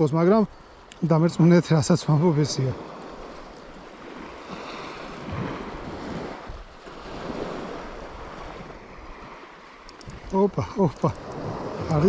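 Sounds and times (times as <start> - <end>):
sea waves washing in: 0.5 - 12.0
wind rumbling on microphone: 2.8 - 12.0.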